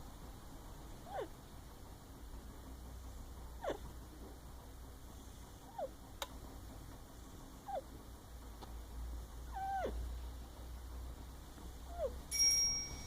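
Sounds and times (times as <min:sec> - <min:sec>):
pet squeaking in its sleep: 0:01.0 - 0:01.3, 0:03.6 - 0:03.9, 0:05.7 - 0:05.9, 0:07.6 - 0:07.9, 0:09.5 - 0:10.0.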